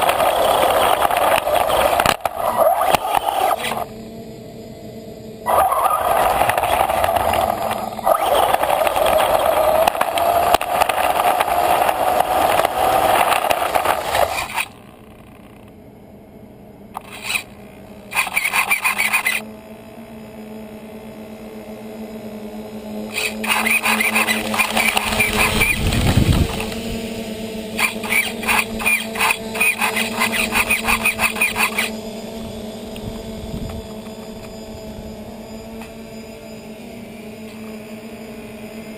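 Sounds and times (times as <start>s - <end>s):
wheels scraping through dry leaves: 0.0s - 3.9s, 5.5s - 14.8s, 23.1s - 27.0s
toy car electric motor whining: 0.0s - 15.8s, 16.9s - 38.9s.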